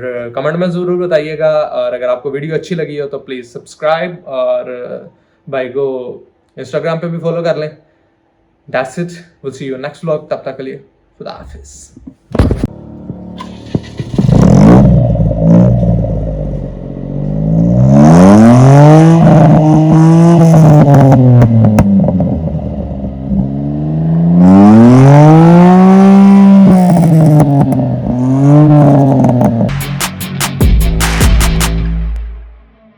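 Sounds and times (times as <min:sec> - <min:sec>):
car engine revving: 0:12.4 - 0:29.8.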